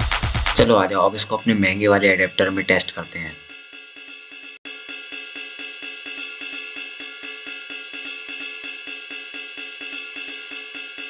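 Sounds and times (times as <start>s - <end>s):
hi-hat and cymbal beat: 0.0s - 11.0s.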